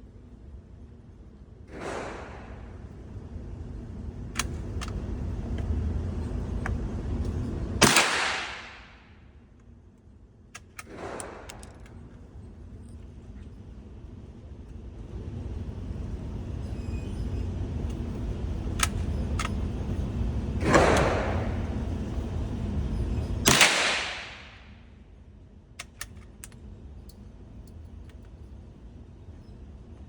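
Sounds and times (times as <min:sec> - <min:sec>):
rifle shots: 0:07.8 - 0:09.0, 0:23.5 - 0:24.7.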